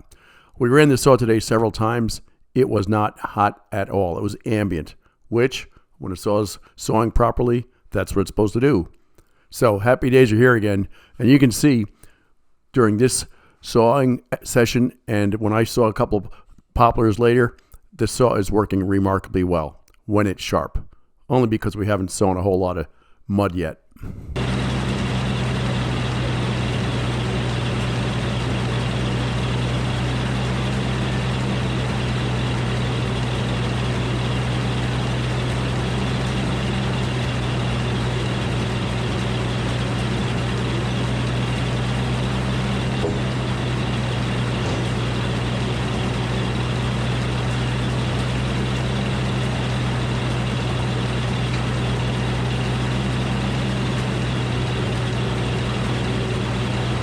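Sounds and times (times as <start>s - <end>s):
sawmill engine running: 24.4s - 57.0s.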